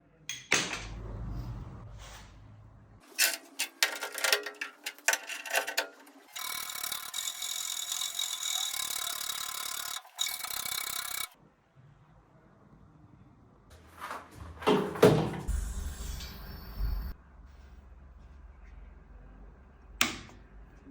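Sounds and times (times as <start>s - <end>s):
metallic clicking and clattering: 3.1s - 7.4s.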